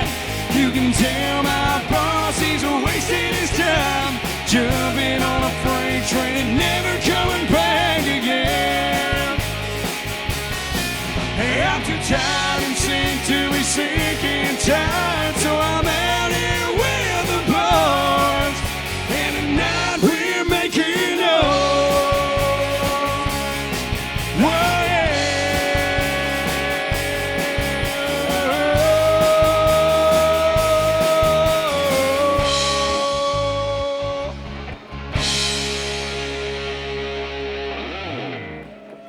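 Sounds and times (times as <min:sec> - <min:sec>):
rock band playing: 0:00.0 - 0:39.0.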